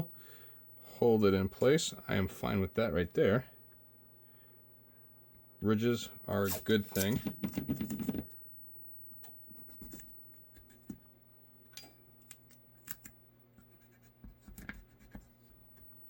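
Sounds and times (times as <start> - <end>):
low steady hum: 0.0 - 16.0
taps and scrapes of small parts: 6.4 - 8.4, 11.7 - 15.9.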